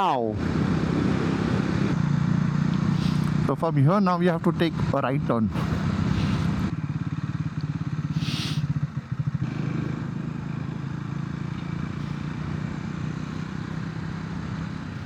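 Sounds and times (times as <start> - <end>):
motorcycle engine running: 0.4 - 15.0
brief hiss: 8.2 - 8.7.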